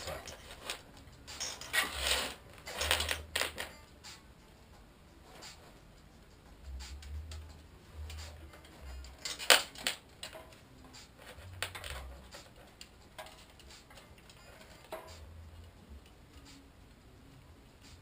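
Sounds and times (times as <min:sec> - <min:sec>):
bicycle chain clinking: 0:00.0 - 0:03.8, 0:08.6 - 0:10.5.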